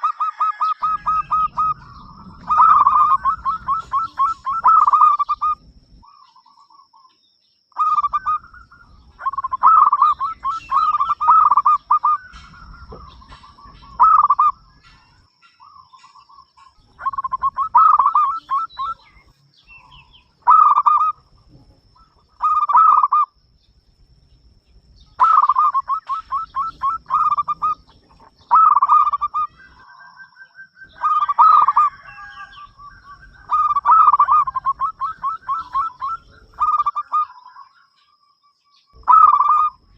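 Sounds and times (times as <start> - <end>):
dove cooing: 0.0 - 6.8, 7.8 - 23.4, 25.0 - 37.8, 39.0 - 39.9.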